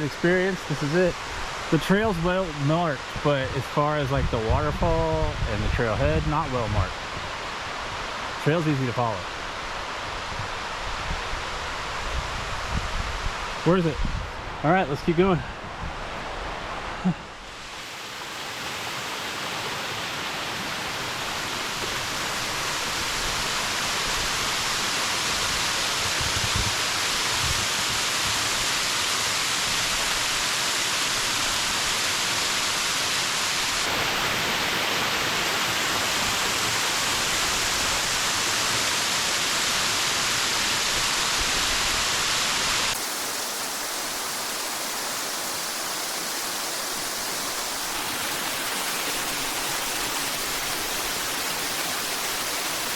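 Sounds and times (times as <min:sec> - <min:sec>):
waterfall rushing: 0:00.0 - 0:52.9.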